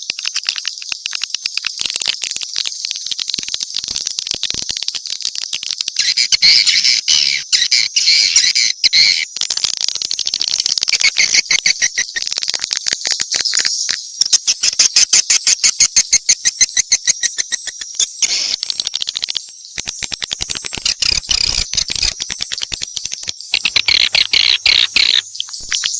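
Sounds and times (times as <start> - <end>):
swiftlet chirps and twitters: 0.2 - 9.3, 10.0 - 25.9.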